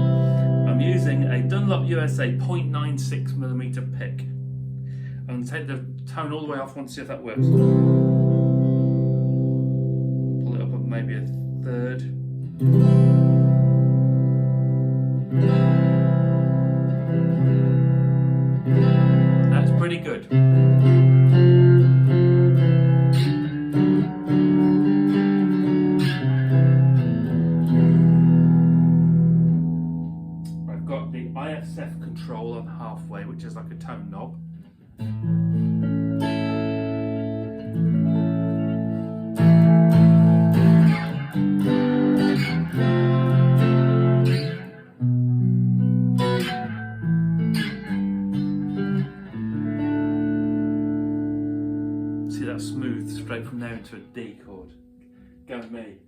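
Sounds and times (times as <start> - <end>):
clean electric guitar chords: 0.0 - 6.2, 7.2 - 56.0.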